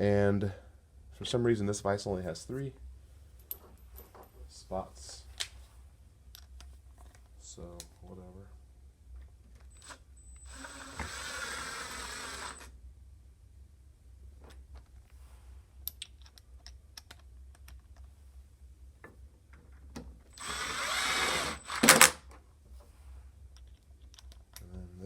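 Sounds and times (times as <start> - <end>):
cordless drill driving screws: 9.7 - 12.7, 20.3 - 22.2.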